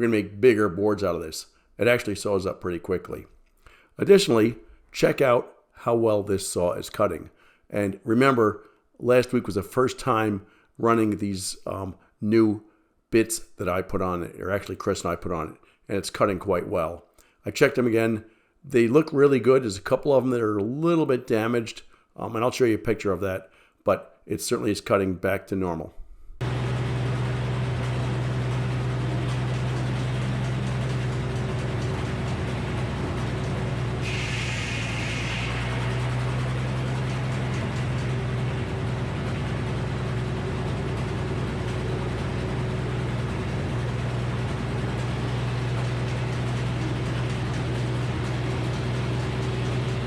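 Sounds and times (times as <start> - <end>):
sawmill mechanical hum: 26.4 - 50.0
brief higher whine: 32.0 - 39.7.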